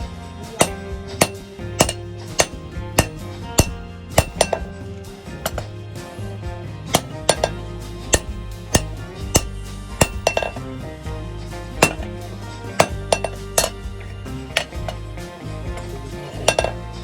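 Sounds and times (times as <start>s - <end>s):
hammer striking iron on anvil: 0.5s - 4.8s, 5.4s - 5.8s, 6.9s - 10.7s, 11.8s - 15.1s, 16.2s - 16.9s.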